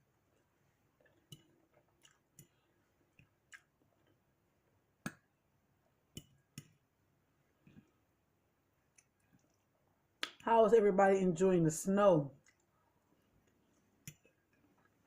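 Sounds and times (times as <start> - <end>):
faint eating clicks and taps: 0.3 - 4.2, 6.1 - 6.8, 7.6 - 8.0, 8.8 - 10.5, 12.4 - 15.0.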